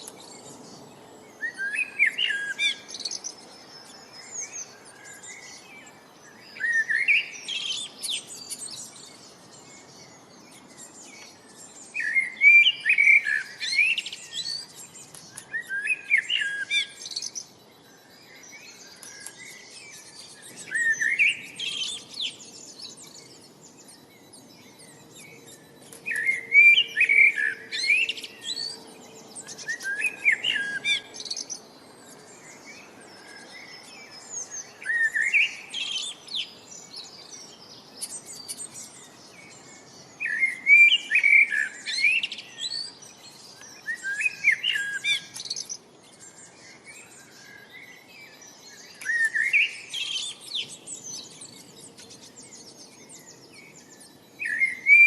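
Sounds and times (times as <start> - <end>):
songbird chirping: 0.0 - 55.0.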